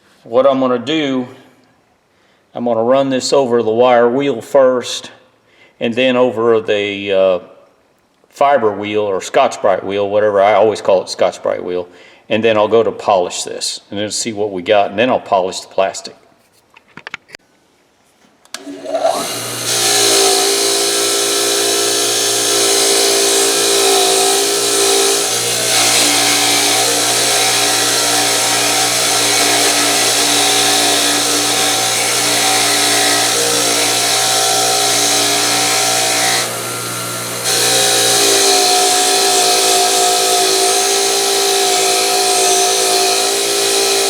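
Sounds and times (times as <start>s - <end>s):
wire wheel motor humming: 18.6s - 44.0s.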